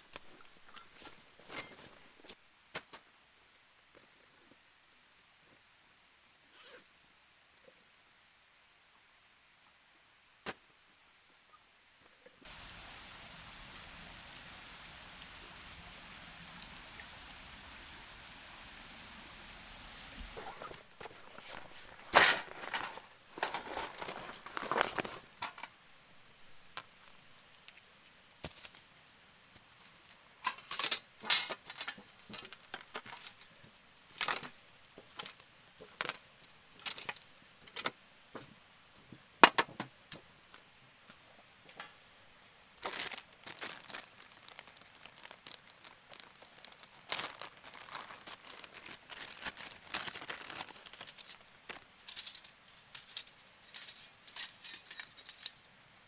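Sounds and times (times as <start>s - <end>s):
crinkling handling noises: 19.9s - 25.8s, 26.4s - 39.2s, 42.8s - 55.6s.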